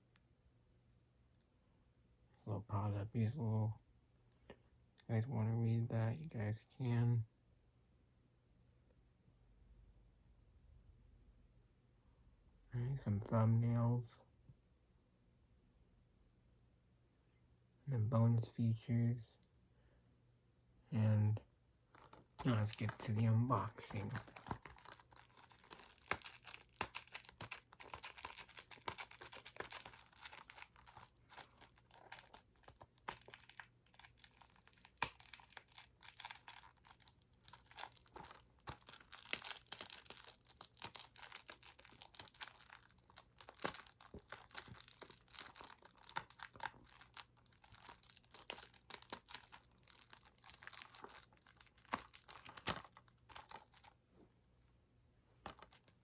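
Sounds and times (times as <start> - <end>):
plastic shrink-wrap crinkling: 22.0 - 54.0.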